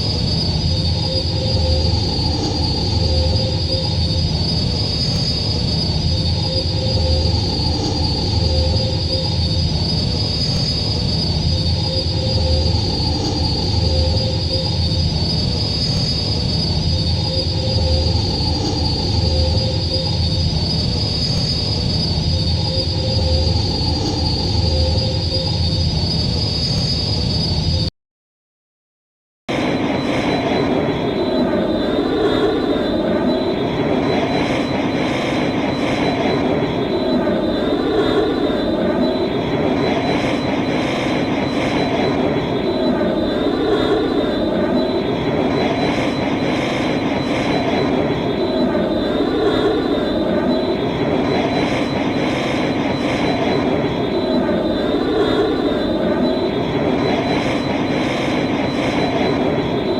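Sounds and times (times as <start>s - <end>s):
spaceship engine roar with whine: 0.0s - 27.9s, 29.5s - 59.9s.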